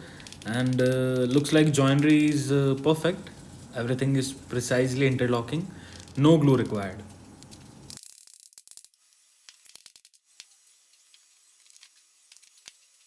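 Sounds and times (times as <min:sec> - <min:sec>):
soft hiss: 0:00.0 - 0:08.0.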